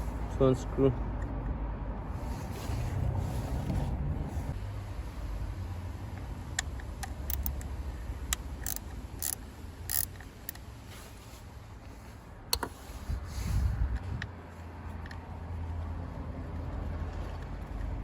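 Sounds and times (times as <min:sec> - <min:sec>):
wind rumbling on microphone: 0:13.0 - 0:14.4.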